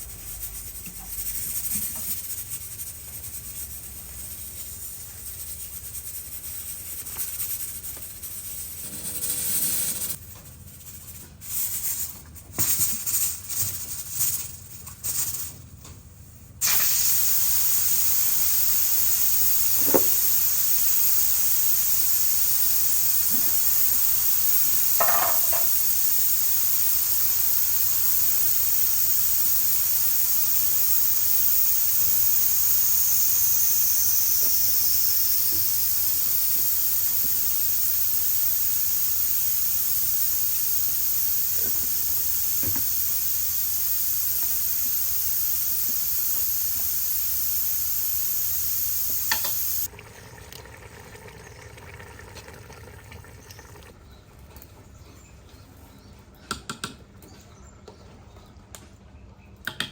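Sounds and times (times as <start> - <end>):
food sizzling in hot oil: 16.6 - 49.9
utensils knocking against pan: 25.0 - 25.8.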